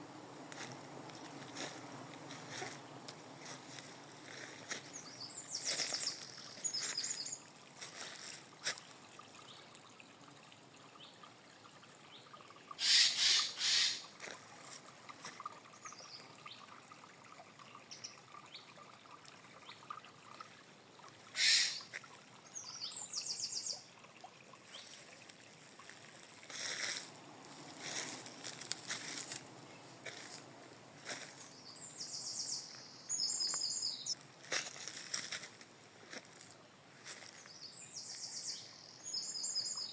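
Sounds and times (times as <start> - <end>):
faint trickle of water: 0.0 - 39.9
bird trilling: 12.8 - 14.0, 21.4 - 21.8.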